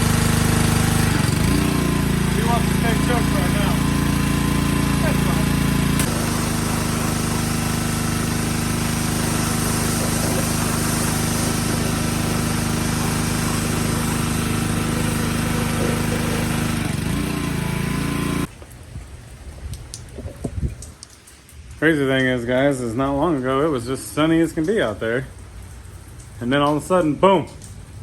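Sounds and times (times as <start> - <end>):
pressure washer engine running: 0.0 - 18.5.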